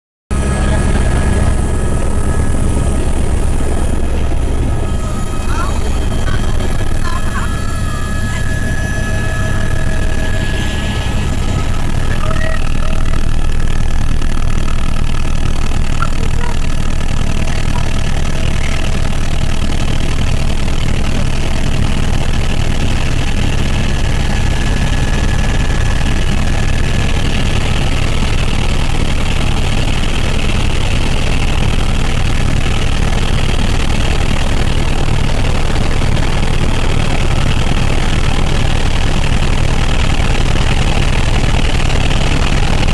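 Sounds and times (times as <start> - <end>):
helicopter rotor and engine: 0.3 - 42.9
faint whining tones: 0.4 - 20.3.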